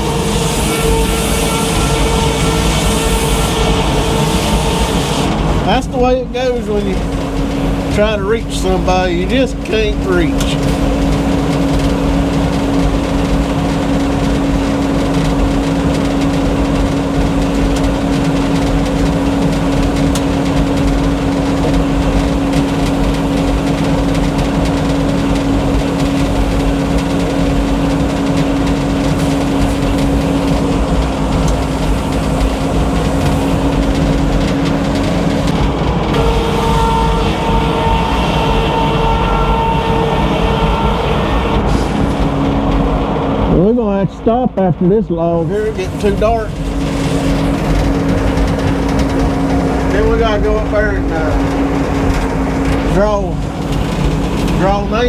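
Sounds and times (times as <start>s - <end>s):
sawmill mechanical hum: 0.0s - 55.0s.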